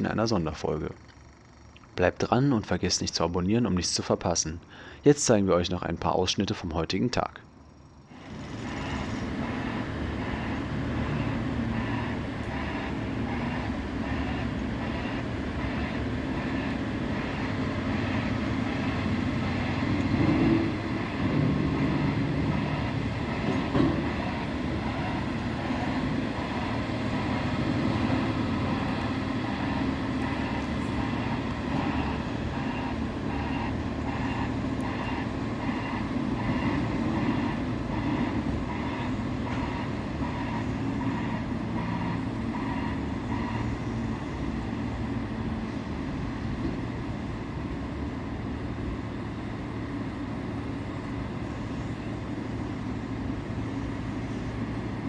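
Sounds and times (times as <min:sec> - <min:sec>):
demolition machinery engine rumble: 0:06.8 - 0:55.0
machinery clatter: 0:08.1 - 0:45.1.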